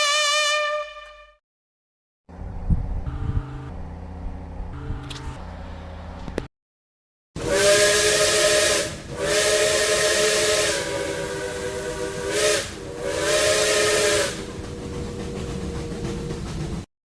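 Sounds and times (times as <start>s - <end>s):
multi-tone steam whistle: 0.0s - 1.4s, 7.4s - 14.6s.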